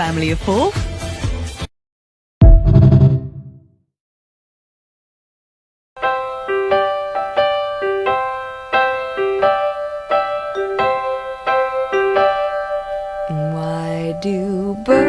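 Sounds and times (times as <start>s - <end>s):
electric piano melody: 6.0s - 15.0s.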